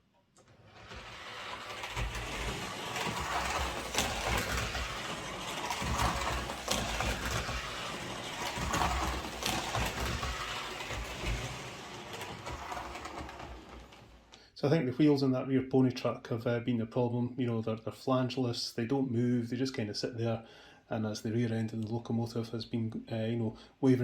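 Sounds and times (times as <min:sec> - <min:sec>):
small electric motor whirring: 0:00.7 - 0:14.2
wheels clicking over rail joints: 0:00.7 - 0:14.3.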